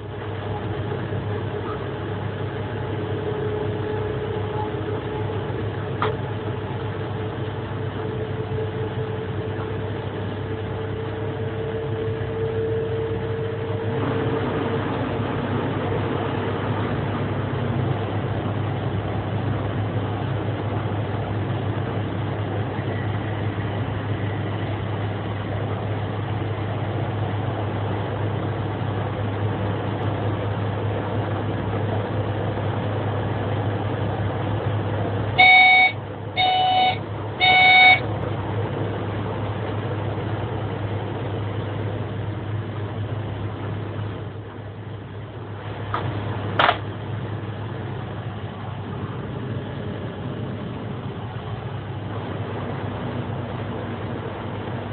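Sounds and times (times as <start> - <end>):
train running with low drone: 0.0 - 54.9
train horn blasts: 3.0 - 5.5, 11.5 - 13.9, 35.4 - 38.1.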